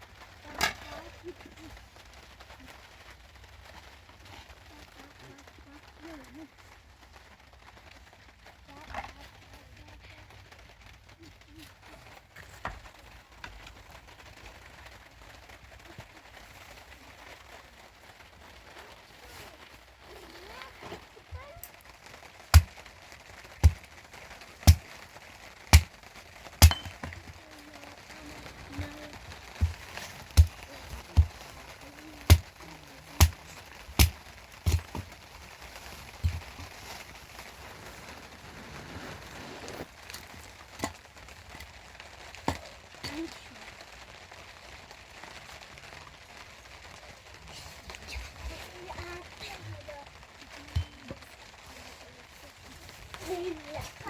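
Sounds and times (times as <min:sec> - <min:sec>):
faint steady background noise: 0:00.0 - 0:54.0
rain hiss: 0:00.0 - 0:54.0
sharp knocks: 0:22.5 - 0:22.8, 0:24.6 - 0:24.9, 0:26.6 - 0:27.2, 0:29.6 - 0:31.4, 0:32.3 - 0:32.5, 0:33.2 - 0:35.2.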